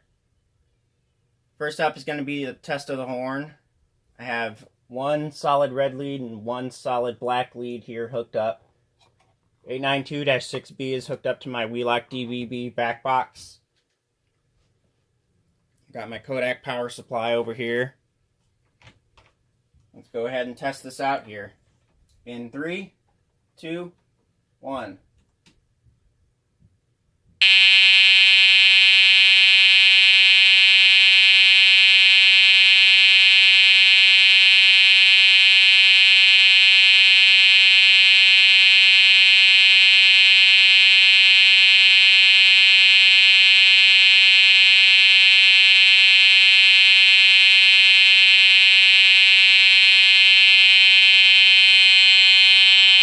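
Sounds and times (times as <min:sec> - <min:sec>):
fire alarm horn steady tone: 0:27.4 - 0:53.0.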